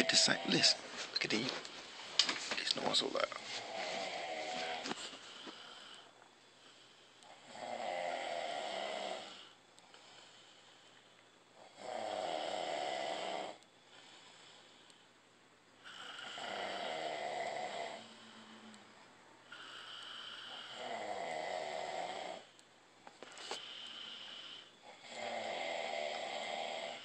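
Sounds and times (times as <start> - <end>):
loud snoring: 0.0 - 0.8, 3.6 - 4.9, 7.2 - 10.2, 11.6 - 14.2, 15.8 - 18.8, 19.5 - 22.5, 23.6 - 27.0.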